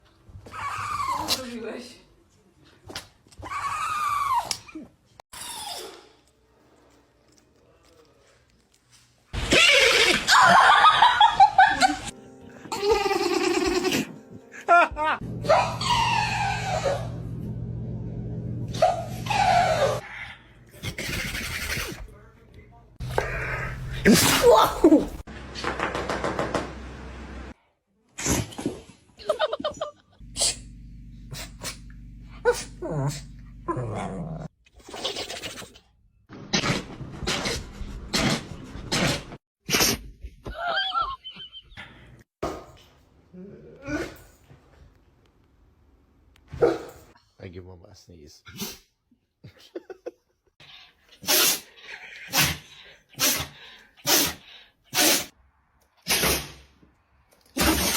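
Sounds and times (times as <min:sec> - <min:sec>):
dogs sneezing: 0:23.0 - 0:25.2, 0:36.6 - 0:40.1, 0:48.5 - 0:48.9, 0:51.1 - 0:55.4, 0:56.0 - 0:56.6, 0:57.6 - 0:57.9.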